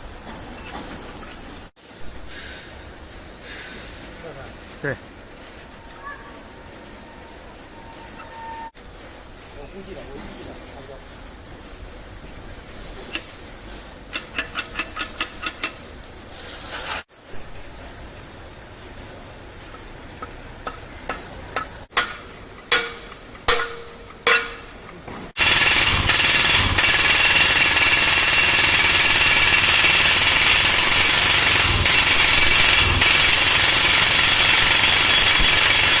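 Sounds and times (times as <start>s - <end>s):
hydraulic rock breaker hammering: 19.8s - 36.0s.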